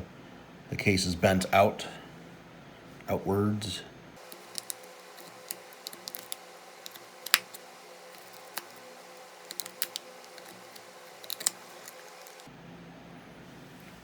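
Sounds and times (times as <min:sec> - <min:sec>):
plastic clips clicking and snapping: 0:04.2 - 0:12.5.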